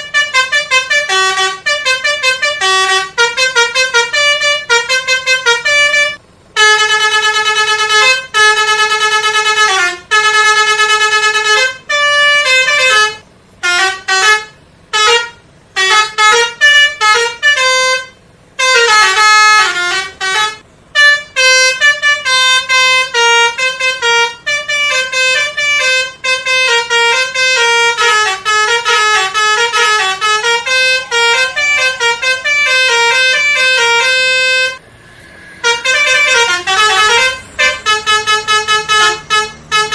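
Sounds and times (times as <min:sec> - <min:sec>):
multi-tone bus horn playing tunes: 0:00.0 - 0:39.9.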